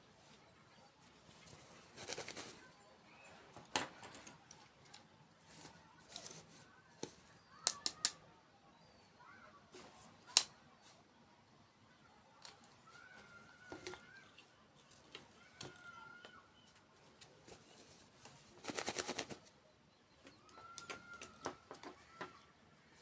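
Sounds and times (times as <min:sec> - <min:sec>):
sharp clicks: 0:07.6 - 0:08.2.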